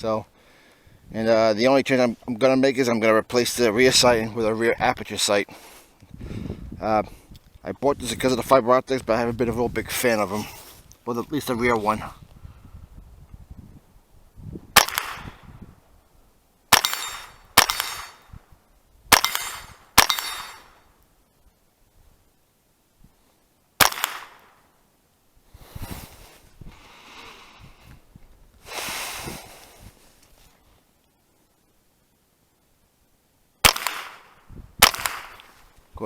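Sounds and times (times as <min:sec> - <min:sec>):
rifle shots: 0:14.8 - 0:15.4, 0:16.7 - 0:18.3, 0:19.1 - 0:20.8, 0:23.8 - 0:24.6, 0:33.6 - 0:35.6.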